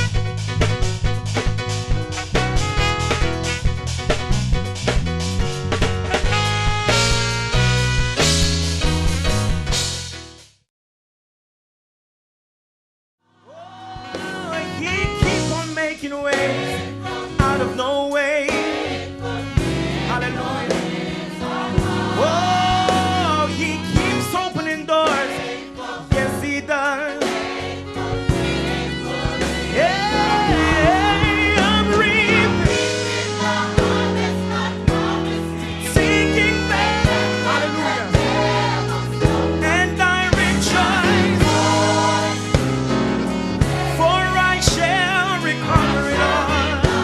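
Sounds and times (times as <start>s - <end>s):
low bass notes: 0.0s - 10.4s, 19.4s - 24.6s, 27.8s - 47.0s
gospel singing over a band: 13.5s - 47.0s.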